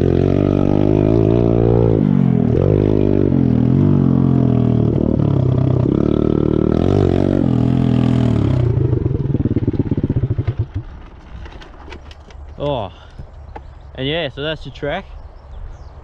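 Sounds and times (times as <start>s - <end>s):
pit bike engine revving: 0.0s - 11.2s.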